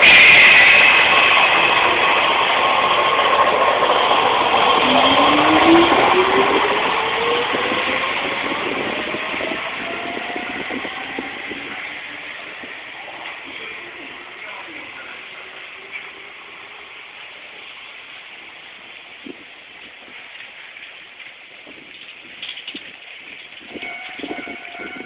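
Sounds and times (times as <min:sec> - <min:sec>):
train wheels rumbling: 0:00.0 - 0:25.0
electric train motor whine: 0:23.8 - 0:25.0.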